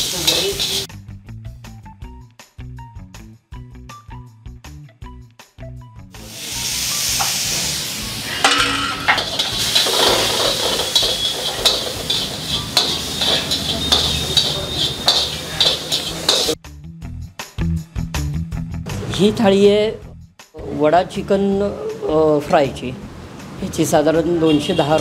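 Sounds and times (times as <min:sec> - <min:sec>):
food frying in hot oil: 0:00.0 - 0:00.9, 0:06.3 - 0:16.6
metal utensil scraping a pan: 0:00.0 - 0:00.9, 0:07.2 - 0:16.6
background music: 0:00.1 - 0:25.0.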